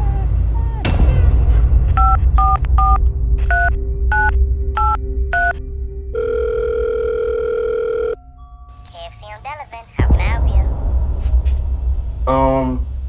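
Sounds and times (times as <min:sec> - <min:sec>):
phone ringing tone: 0:06.2 - 0:08.2
touch-tone dialling beeps: 0:06.2 - 0:08.2.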